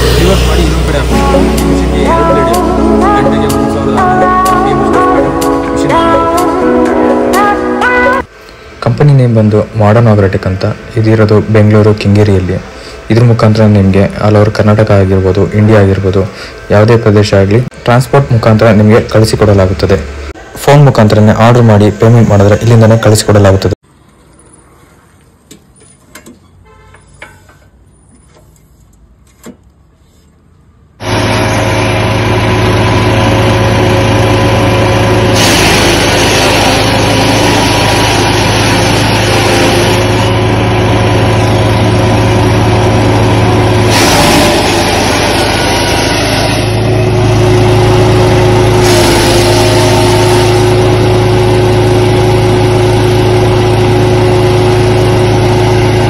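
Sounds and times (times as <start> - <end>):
wood chipper engine running: 0.0 - 6.7, 31.0 - 56.0
harsh rushing noise: 0.0 - 8.3, 31.0 - 56.0.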